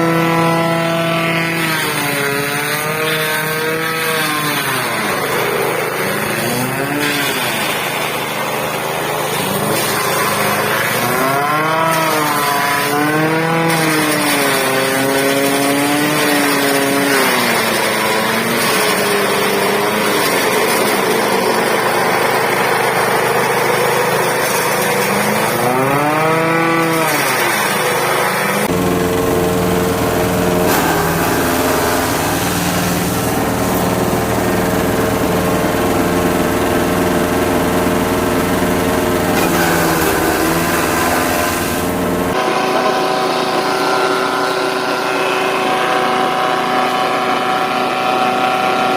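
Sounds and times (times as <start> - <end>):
small engine running: 0.0 - 48.9.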